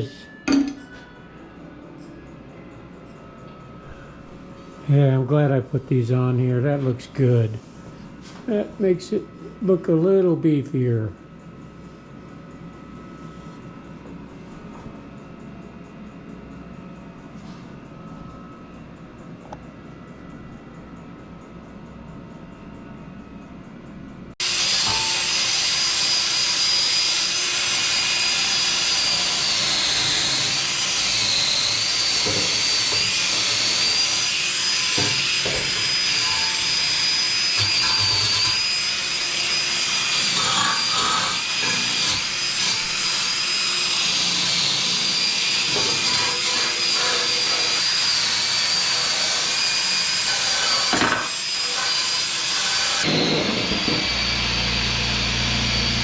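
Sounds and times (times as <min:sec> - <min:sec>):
die grinder high whine: 0:24.4 - 0:56.0.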